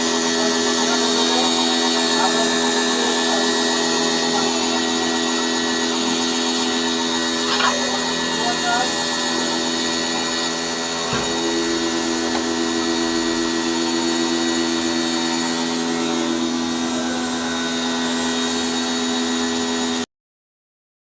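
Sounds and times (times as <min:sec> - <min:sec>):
electric machine whining: 0:00.0 - 0:20.0.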